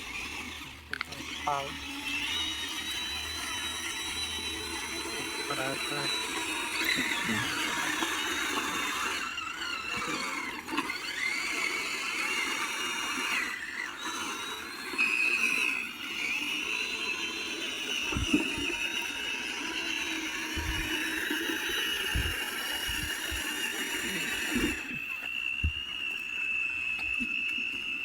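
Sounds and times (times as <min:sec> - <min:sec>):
small electric motors whining: 0:00.0 - 0:28.0.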